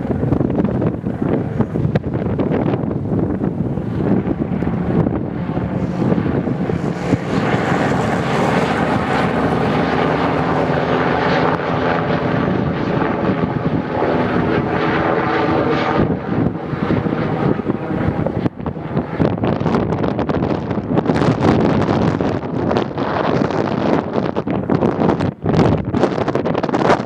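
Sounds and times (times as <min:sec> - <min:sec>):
helicopter engine whine: 0:00.0 - 0:27.0
wind on microphone: 0:00.0 - 0:27.0.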